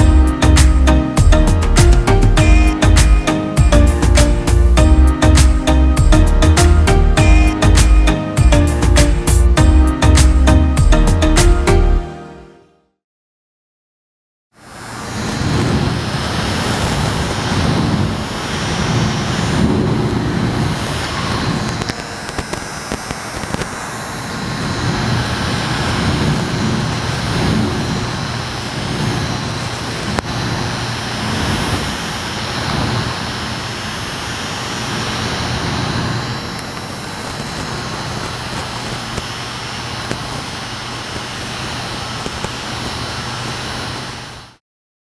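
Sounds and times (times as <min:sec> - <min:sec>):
small fan airflow: 0:14.6 - 0:44.6.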